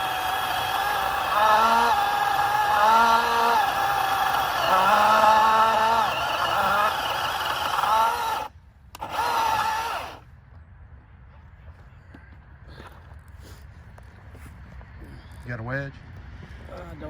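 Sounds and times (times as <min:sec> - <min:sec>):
electric chainsaw cutting wood: 0:00.0 - 0:10.2.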